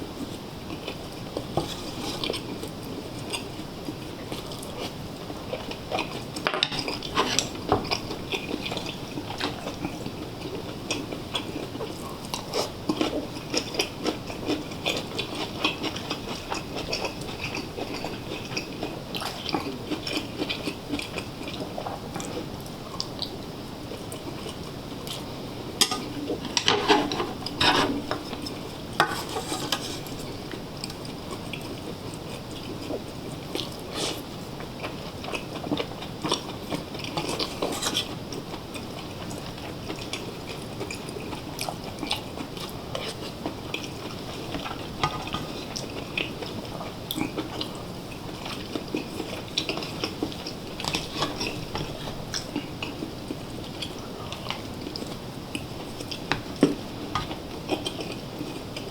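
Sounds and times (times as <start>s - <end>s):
chewing and biting: 0.7s - 25.3s, 34.8s - 58.9s
utensils clicking against dishes: 25.8s - 28.3s.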